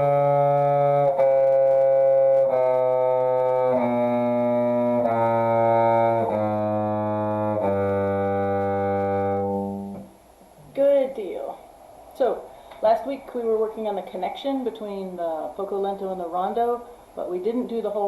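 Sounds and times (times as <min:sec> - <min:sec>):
bowed string instrument scale: 0:00.0 - 0:10.1.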